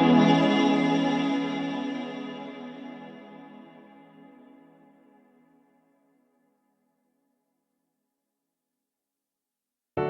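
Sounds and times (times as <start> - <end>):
ambient music with held tones: 0.0 - 6.3.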